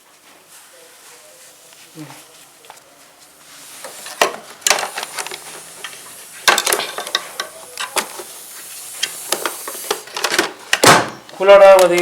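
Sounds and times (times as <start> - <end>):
plastic parts clicking and knocking: 6.4 - 8.1, 9.3 - 11.1.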